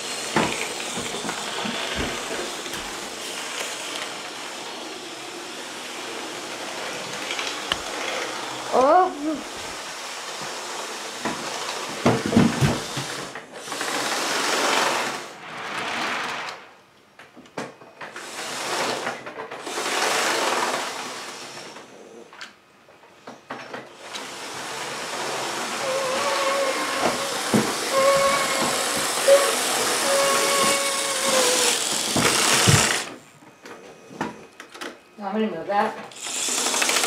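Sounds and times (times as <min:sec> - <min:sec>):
model train motor whirring: 0:24.0 - 0:33.2, 0:36.1 - 0:37.0.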